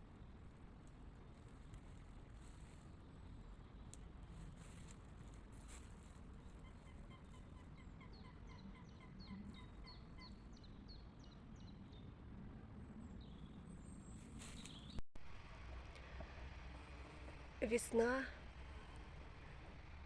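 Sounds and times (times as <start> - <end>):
songbird singing: 6.3 - 12.2, 12.8 - 15.0.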